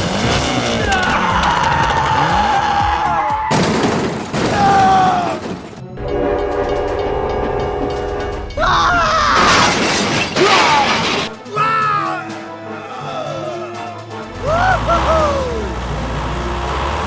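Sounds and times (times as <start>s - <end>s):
horn sounding a held chord: 11.5s - 17.0s.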